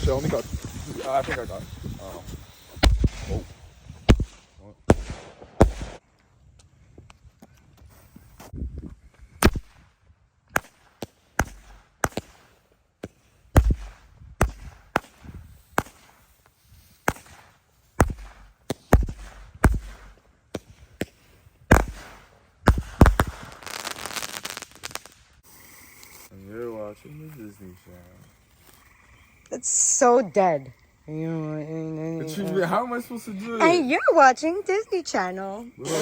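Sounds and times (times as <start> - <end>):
fireworks bangs: 0.0 - 6.0, 10.5 - 27.6
fireworks crackling: 0.0 - 6.1, 10.5 - 31.6, 32.2 - 36.0.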